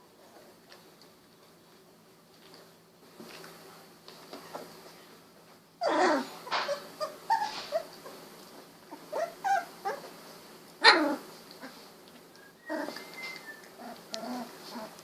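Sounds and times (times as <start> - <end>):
puppy yelp: 5.8 - 8.0, 8.9 - 10.1, 10.8 - 11.2
puppies whimpering and squeaking: 5.8 - 8.2, 8.9 - 10.2, 12.6 - 15.0.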